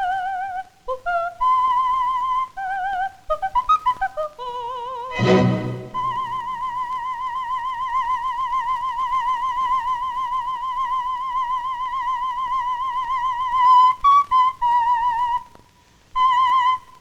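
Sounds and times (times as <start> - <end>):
high warbling tone: 5.2 - 6.6.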